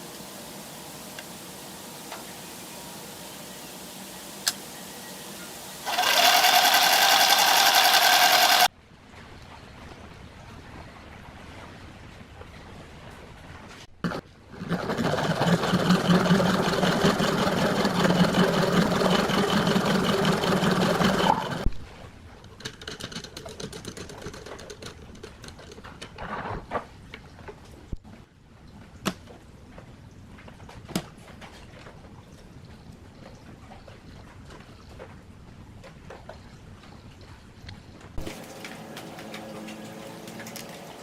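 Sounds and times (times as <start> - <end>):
small electric motor running: 5.8 - 8.7, 14.8 - 21.7.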